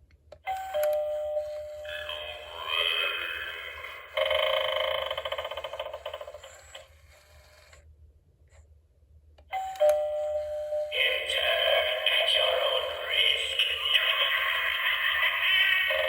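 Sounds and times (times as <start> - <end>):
fuller louder electronic sound: 10.9 - 16.0.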